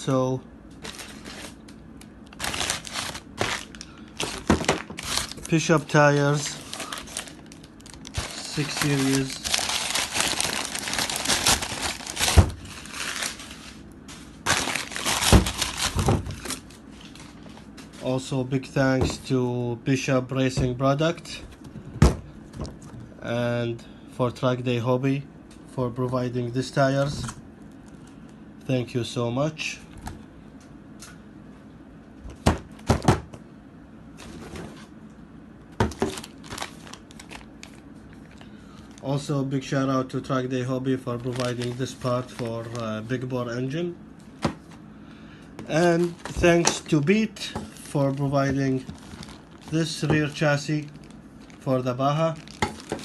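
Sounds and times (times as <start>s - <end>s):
plastic packaging crinkling: 0.8s - 17.7s, 35.8s - 39.4s, 40.8s - 43.3s, 47.7s - 53.0s.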